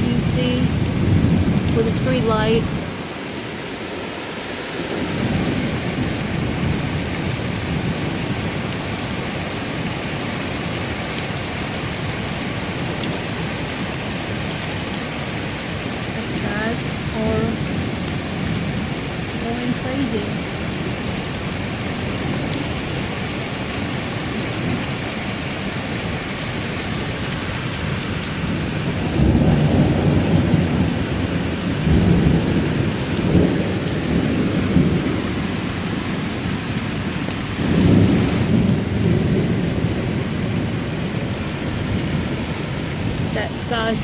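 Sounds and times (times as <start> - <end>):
thunder rumbling: 0.0 - 3.1, 4.8 - 9.0, 15.8 - 44.0
steady rain falling: 0.0 - 44.0.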